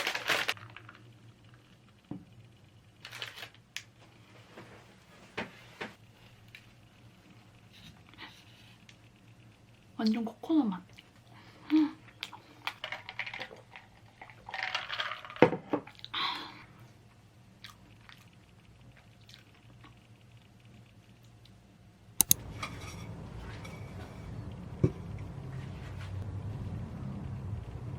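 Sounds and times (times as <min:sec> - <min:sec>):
steady low hum: 0:16.6 - 0:27.9
close chewing of pastry: 0:17.6 - 0:20.1
sharp click: 0:22.2 - 0:22.4.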